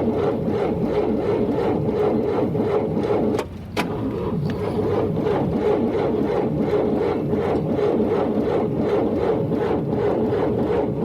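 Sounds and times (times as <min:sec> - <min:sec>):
car engine cranking: 0:00.7 - 0:09.1.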